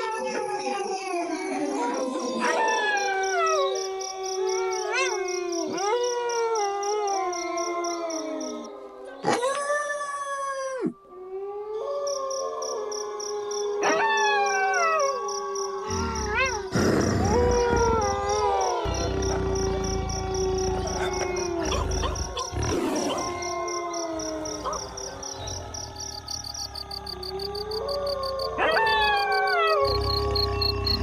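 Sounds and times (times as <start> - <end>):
wolves howling in chorus: 0.0 - 31.0
wolves yipping: 2.3 - 8.7, 17.4 - 31.0.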